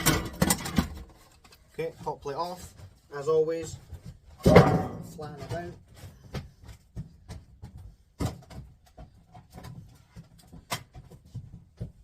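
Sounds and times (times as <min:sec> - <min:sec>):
sheet metal knocking and clattering: 0:00.0 - 0:01.2, 0:04.4 - 0:05.7.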